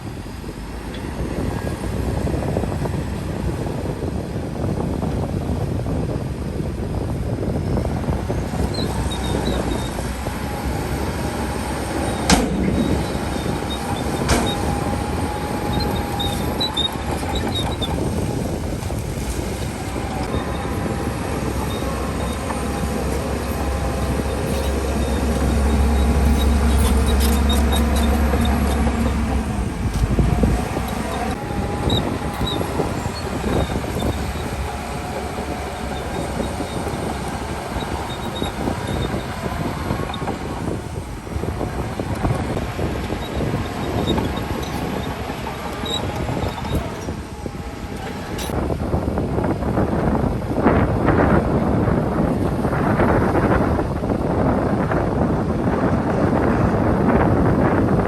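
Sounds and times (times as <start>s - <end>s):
heavy diesel machinery rumbling: 0.0s - 58.0s
short squeaks: 8.3s - 10.1s, 11.9s - 40.8s, 41.4s - 47.2s, 47.9s - 48.6s.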